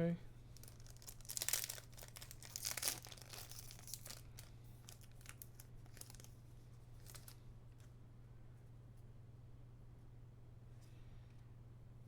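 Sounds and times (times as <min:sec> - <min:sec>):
wrapper crinkling: 0:00.5 - 0:07.4.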